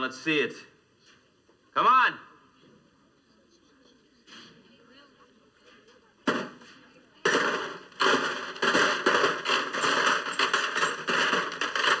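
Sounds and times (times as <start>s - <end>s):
hard objects clattering onto pile: 7.3s - 12.0s.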